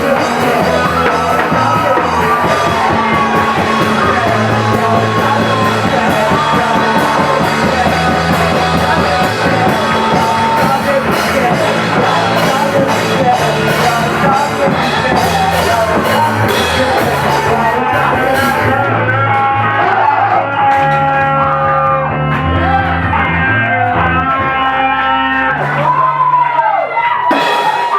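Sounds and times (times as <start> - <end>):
rock band playing live: 0.0 - 27.9
shouted singing: 0.0 - 27.9.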